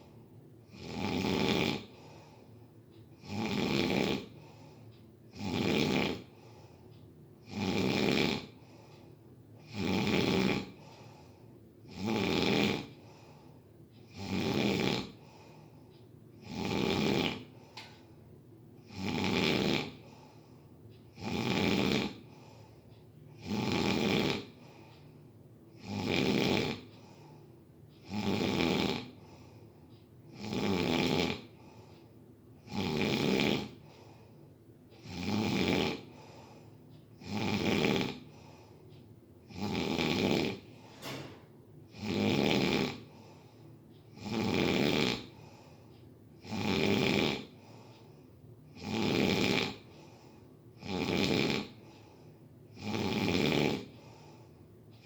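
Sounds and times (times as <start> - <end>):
person snoring: 0.0 - 2.5, 3.2 - 6.7, 7.4 - 8.9, 9.6 - 13.5, 14.1 - 15.7, 16.4 - 17.9, 18.8 - 20.4, 21.1 - 22.7, 23.3 - 24.9, 25.7 - 27.4, 28.0 - 29.6, 30.3 - 31.9, 32.6 - 34.4, 35.0 - 38.7, 39.5 - 43.5, 44.1 - 45.8, 46.4 - 48.0, 48.7 - 54.5.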